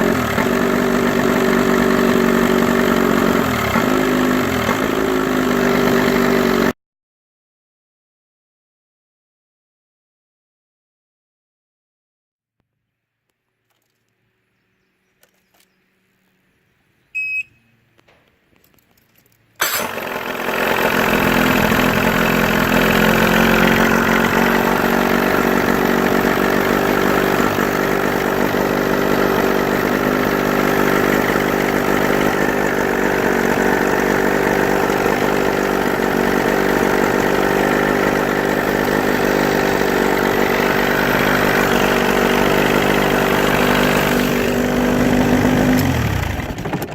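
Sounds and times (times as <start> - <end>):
outboard motor running: 0.0 - 6.8, 19.6 - 46.9.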